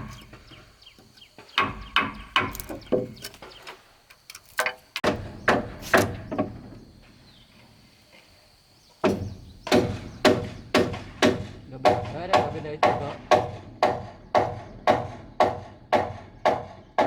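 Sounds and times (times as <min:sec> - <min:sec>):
tool knocking on wood: 0:01.4 - 0:03.6, 0:09.0 - 0:16.8.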